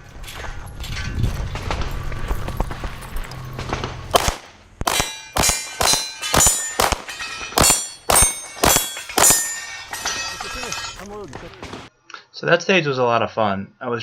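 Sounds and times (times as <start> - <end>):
steel targets clanging: 4.1 - 11.9.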